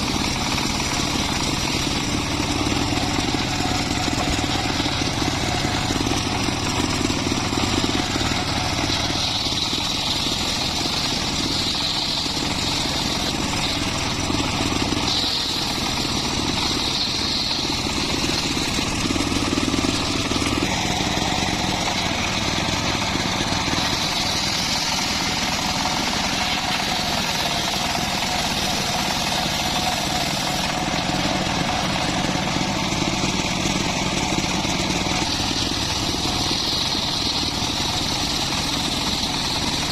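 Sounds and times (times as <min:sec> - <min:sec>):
circular saw cutting wood: 0:00.0 - 0:39.9.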